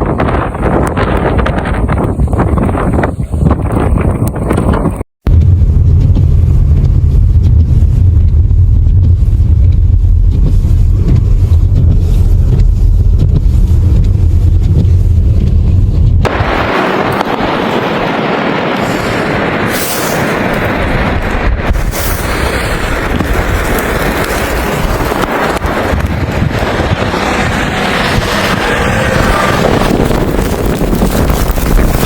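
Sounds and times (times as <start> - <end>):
wind buffeting microphone: 0.0 - 32.0
hiss of wind: 16.3 - 32.0.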